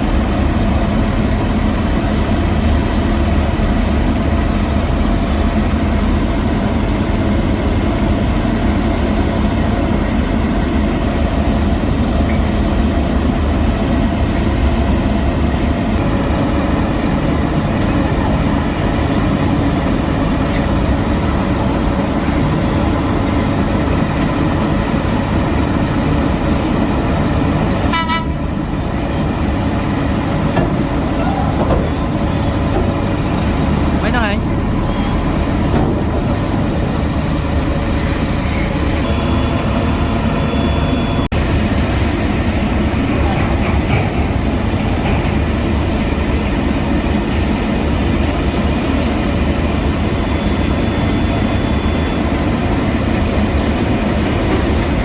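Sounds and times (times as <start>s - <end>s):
heavy machinery engines rumbling: 0.0s - 55.0s.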